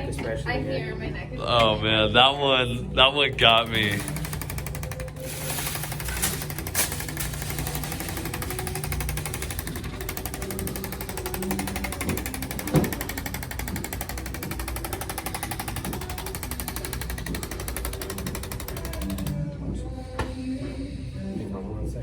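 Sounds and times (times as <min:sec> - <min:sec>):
percussion tool hammering rapidly: 0:03.0 - 0:19.4.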